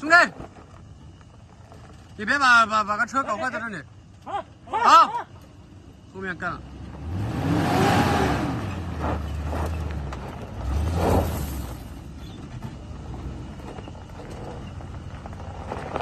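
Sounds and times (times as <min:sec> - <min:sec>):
engine revving hard: 0:06.9 - 0:09.9, 0:10.6 - 0:11.6.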